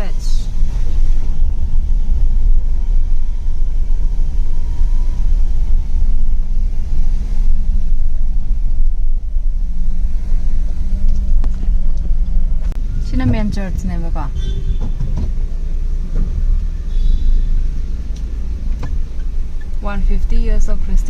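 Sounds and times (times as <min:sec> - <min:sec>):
car rumbling in motion: 0:00.0 - 0:21.0
faint engine hum: 0:00.0 - 0:21.0.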